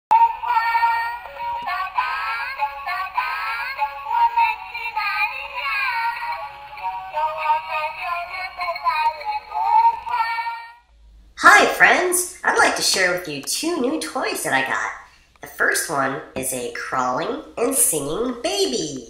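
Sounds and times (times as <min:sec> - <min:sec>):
synthetic voice singing: 0:00.1 - 0:10.7.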